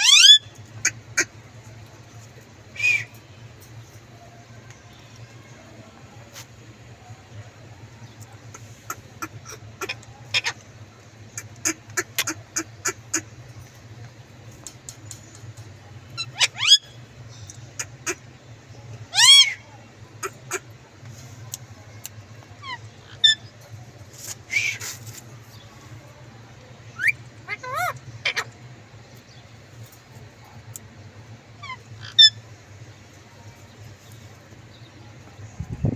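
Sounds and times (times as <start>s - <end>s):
parakeet chirps: 0.0s - 1.3s, 16.2s - 18.2s, 22.6s - 23.5s, 31.6s - 32.4s
parakeet rising squawks: 0.0s - 1.3s, 16.2s - 17.0s, 19.1s - 19.6s
parrot high-pitched calls: 0.0s - 1.3s, 9.2s - 10.6s, 16.2s - 17.0s, 19.1s - 19.6s, 22.6s - 23.5s, 27.0s - 28.6s, 31.6s - 32.4s
steady low hum: 0.0s - 35.9s.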